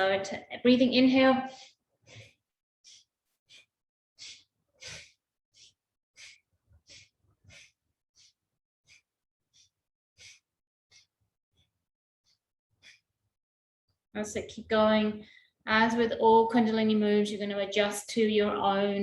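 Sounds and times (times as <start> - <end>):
woman breathing rapidly: 1.4 - 11.7, 12.3 - 13.1.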